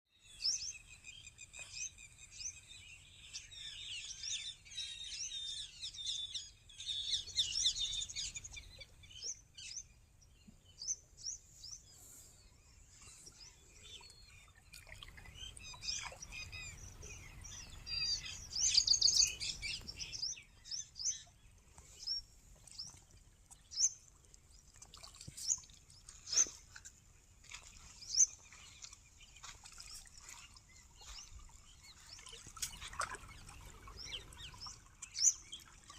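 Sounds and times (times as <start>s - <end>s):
birds chirping and singing: 0.2s - 24.0s, 27.4s - 35.9s.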